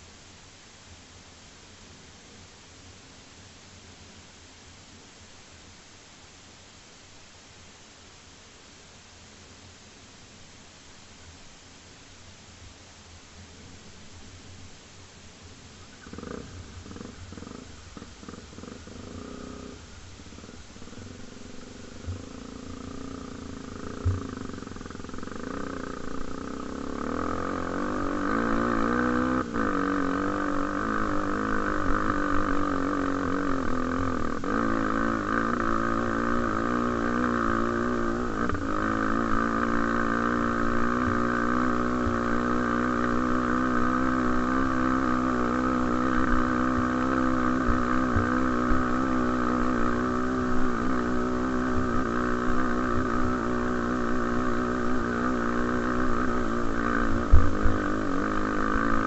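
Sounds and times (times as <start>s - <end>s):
motorcycle engine running: 15.4s - 59.0s.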